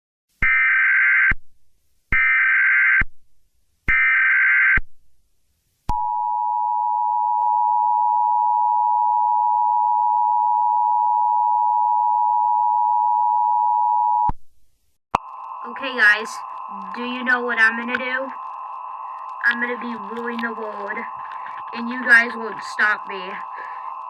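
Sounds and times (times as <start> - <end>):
buzzy digital data tones: 15.2 - 24.0
steady two-tone alert signal: 15.2 - 24.0.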